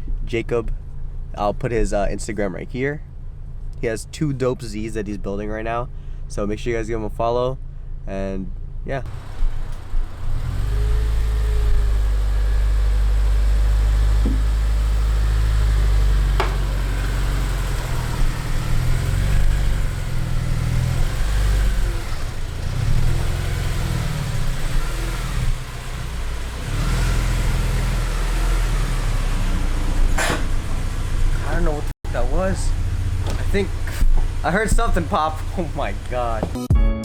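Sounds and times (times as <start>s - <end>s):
car engine rumbling: 0.0s - 36.7s
road noise: 8.6s - 36.6s.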